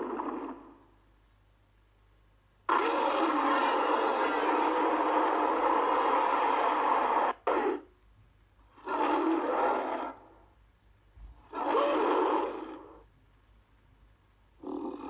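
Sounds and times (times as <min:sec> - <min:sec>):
monster roar: 0:02.7 - 0:07.8, 0:08.8 - 0:10.3, 0:11.4 - 0:13.0.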